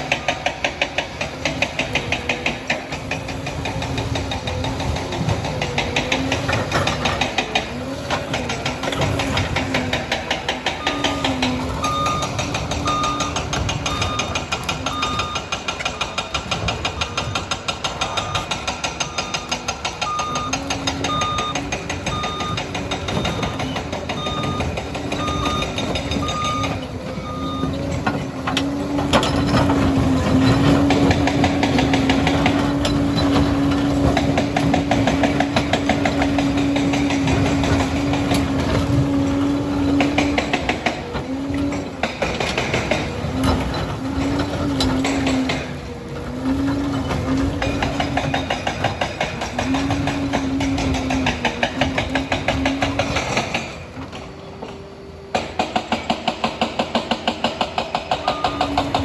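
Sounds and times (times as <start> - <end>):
diesel engine droning: 0.0 - 59.0
machine clatter: 0.0 - 59.0
backup alarm beeping: 10.7 - 16.4, 17.0 - 28.0.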